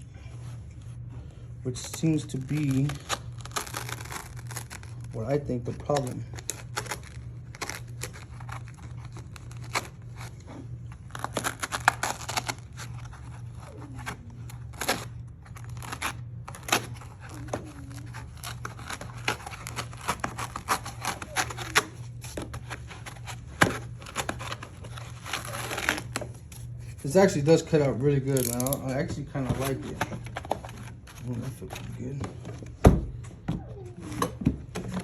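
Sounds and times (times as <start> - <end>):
steady low hum: 0.0 - 35.0
foam scraping and tearing: 2.0 - 29.9.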